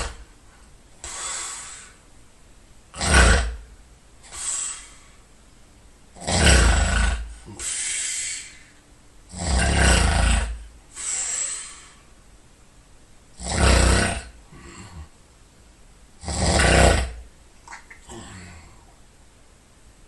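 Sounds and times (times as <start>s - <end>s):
breathy exhale: 1.0s - 2.0s, 4.2s - 5.2s, 7.3s - 8.8s, 10.9s - 12.1s
person snoring loudly: 2.9s - 3.6s, 6.2s - 8.6s, 9.3s - 11.8s, 13.4s - 15.1s, 16.2s - 17.2s.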